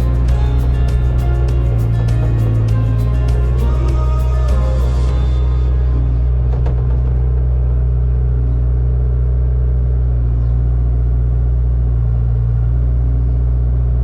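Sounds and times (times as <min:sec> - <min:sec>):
heavy machine engine droning: 0:00.0 - 0:12.8.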